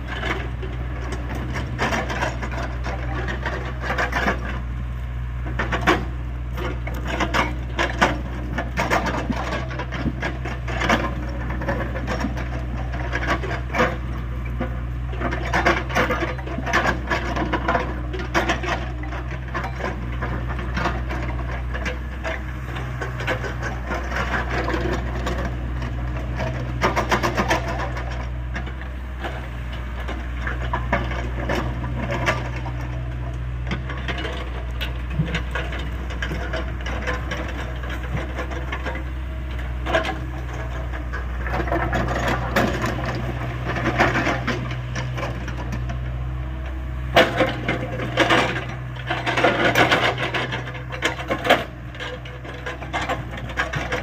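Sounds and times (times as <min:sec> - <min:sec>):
diesel engine humming: 0:00.0 - 0:54.0
hydraulic breaker hammering rock: 0:47.1 - 0:54.0.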